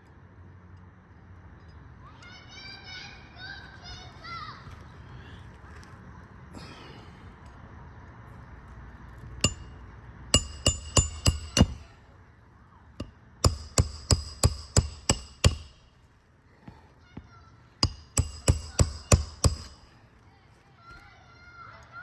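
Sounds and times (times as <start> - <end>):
hammer driving nails: 10.4 - 11.9, 13.0 - 15.9, 17.8 - 19.9.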